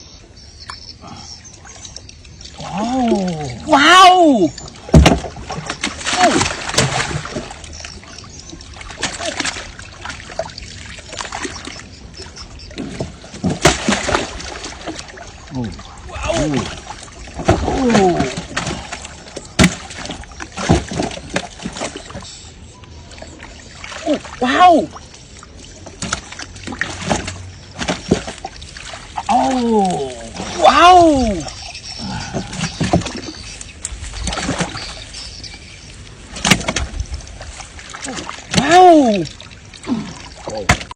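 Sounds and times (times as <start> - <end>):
water splashing and trickling: 0.0 - 40.9
sharp knocks: 4.9 - 5.3.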